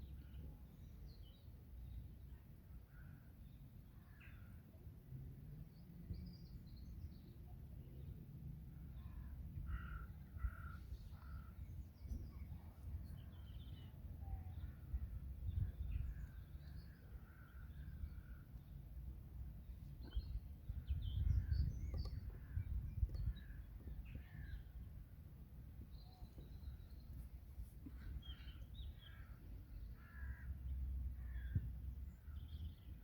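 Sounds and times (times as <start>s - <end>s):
steady low rumble: 8.7s - 33.0s
small birds chirping: 8.9s - 24.9s, 25.8s - 33.0s.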